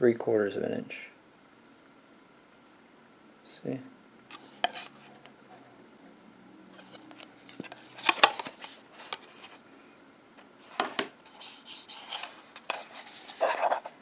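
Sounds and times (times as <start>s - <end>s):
light rubbing: 10.7s - 14.0s.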